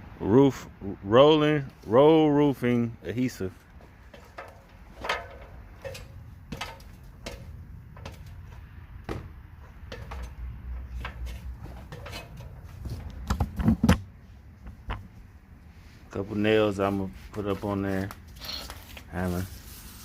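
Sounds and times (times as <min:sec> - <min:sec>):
tools knocking and clunking: 0:03.8 - 0:15.1.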